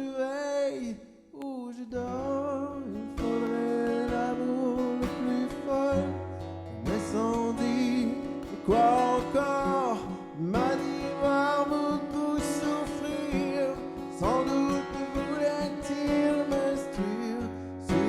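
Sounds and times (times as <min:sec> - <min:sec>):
man singing: 0:00.0 - 0:18.0
strummed acoustic guitar: 0:01.9 - 0:18.0.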